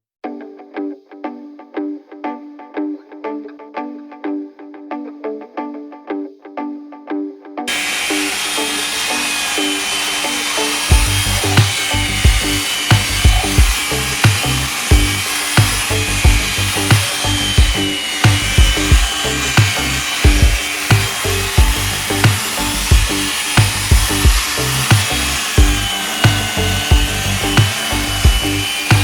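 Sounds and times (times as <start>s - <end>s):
hissing whirring tool: 7.7s - 29.0s
music with drum beat: 10.9s - 29.0s.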